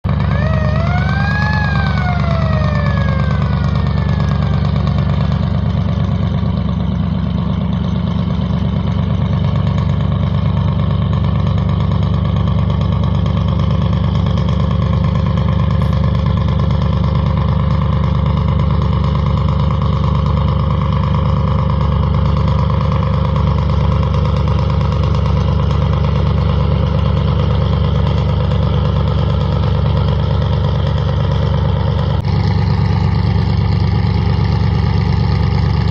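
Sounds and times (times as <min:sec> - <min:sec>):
vessel siren whoop: 0:00.1 - 0:05.5
boat engine droning: 0:00.1 - 0:19.6, 0:20.5 - 0:35.9.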